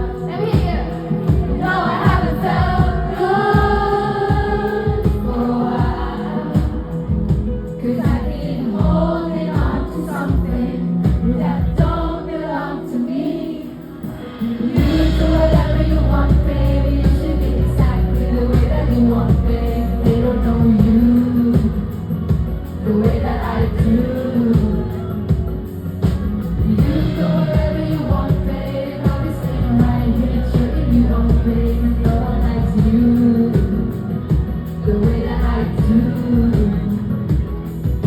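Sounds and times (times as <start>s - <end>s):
drum hits: 0.0s - 12.1s
live pop band playing: 0.0s - 38.0s
person singing: 7.8s - 38.0s
heavy bass: 14.0s - 38.0s.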